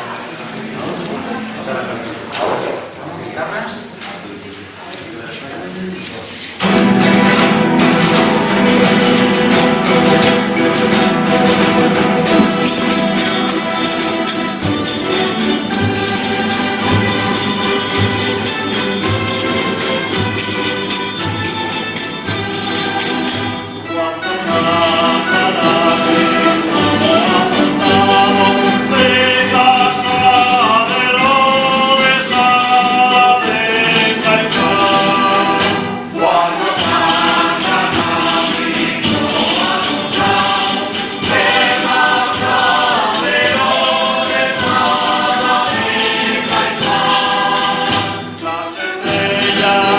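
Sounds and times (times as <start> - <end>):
group singing: 6.6 - 49.9
plucked strings: 6.6 - 49.9
tambourine jingles: 11.9 - 24.0, 36.7 - 49.9.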